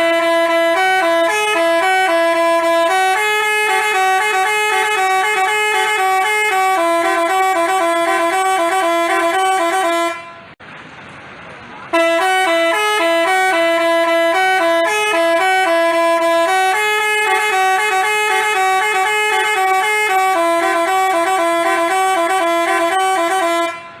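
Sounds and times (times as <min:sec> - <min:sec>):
multi-tone bus horn tune: 0:00.0 - 0:10.6, 0:11.9 - 0:24.0.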